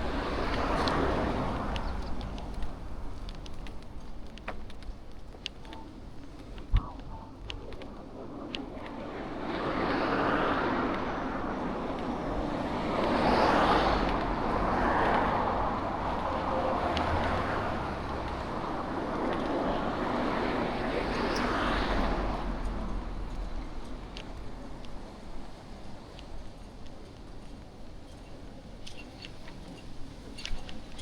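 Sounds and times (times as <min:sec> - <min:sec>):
cars passing: 0:00.0 - 0:05.0, 0:06.8 - 0:26.0.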